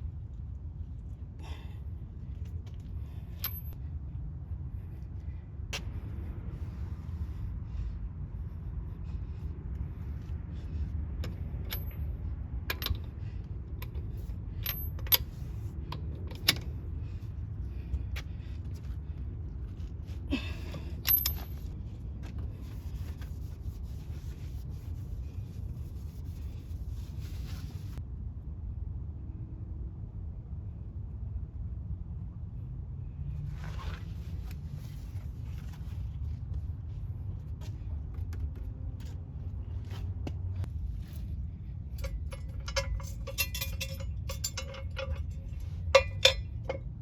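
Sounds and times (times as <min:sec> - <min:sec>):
metal tools clinking: 0:21.0 - 0:21.7, 0:41.9 - 0:46.9
hardware clattering: 0:42.0 - 0:46.9.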